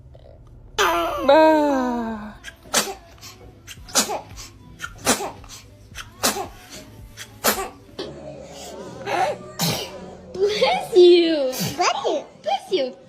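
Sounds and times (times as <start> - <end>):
baby sneezing: 2.4 - 7.9, 9.6 - 10.1, 11.5 - 12.0.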